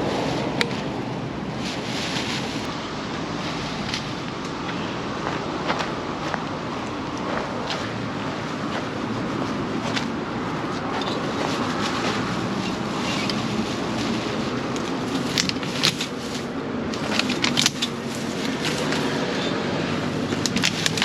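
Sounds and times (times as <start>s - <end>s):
plastic and paper crinkling: 1.6s - 2.7s, 9.8s - 19.3s, 20.0s - 21.0s.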